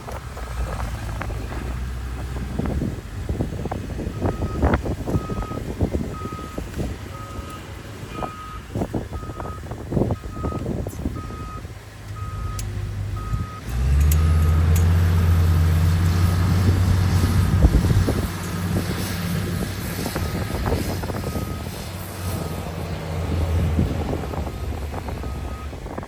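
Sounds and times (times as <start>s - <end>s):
diesel engine revving: 0.0s - 26.0s
reversing alarm beeping: 7.2s - 8.6s, 12.2s - 13.6s, 20.2s - 22.4s, 24.5s - 25.7s.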